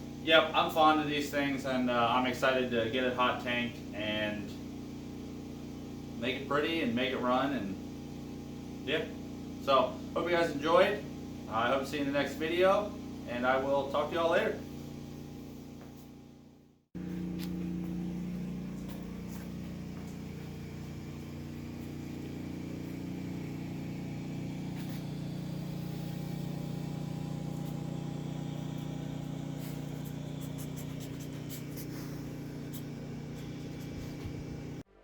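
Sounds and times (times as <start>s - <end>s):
engine running steadily: 17.0s - 34.9s.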